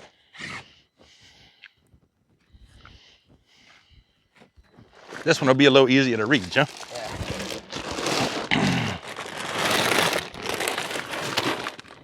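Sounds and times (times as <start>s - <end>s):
sack crinkling and rustling: 4.9s - 12.0s.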